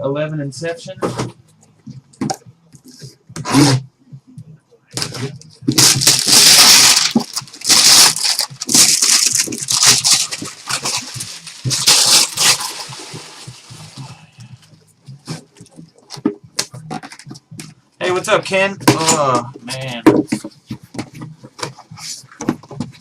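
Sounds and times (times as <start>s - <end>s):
plastic wrap and cardboard crinkling: 5.0s - 14.2s.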